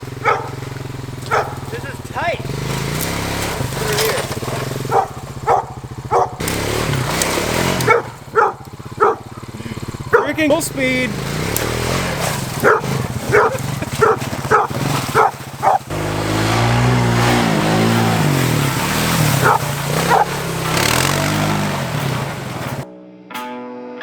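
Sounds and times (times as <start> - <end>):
small engine revving: 0.0 - 22.8
dog barking: 0.1 - 2.0, 3.8 - 6.5, 7.5 - 10.4, 12.4 - 16.6, 19.3 - 21.3.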